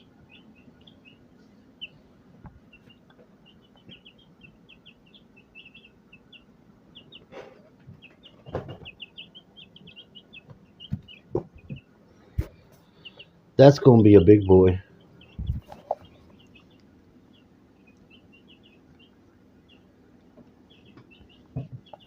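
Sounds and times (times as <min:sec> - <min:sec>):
baby chicks peeping: 0:00.0 - 0:22.0
soft knocks and rustles: 0:07.4 - 0:09.0.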